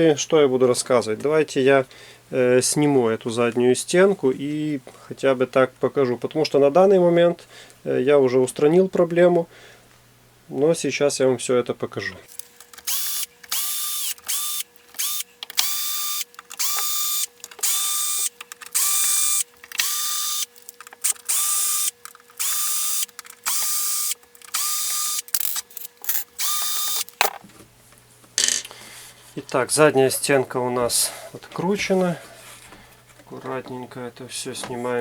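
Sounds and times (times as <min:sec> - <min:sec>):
cordless screwdriver whirring: 0:12.3 - 0:27.4.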